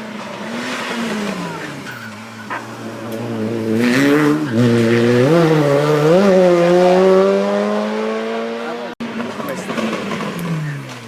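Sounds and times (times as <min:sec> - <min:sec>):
race car engine revving: 0:02.5 - 0:11.0.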